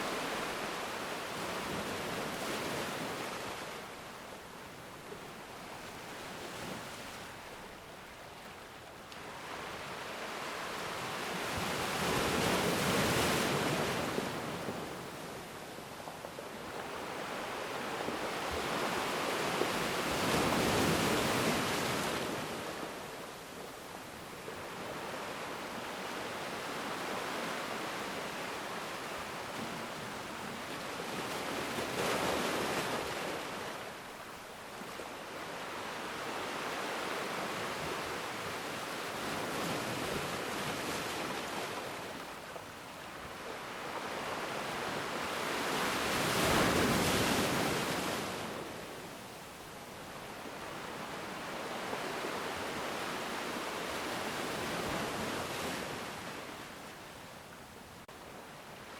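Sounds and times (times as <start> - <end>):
ocean waves breaking: 43.1 - 48.7.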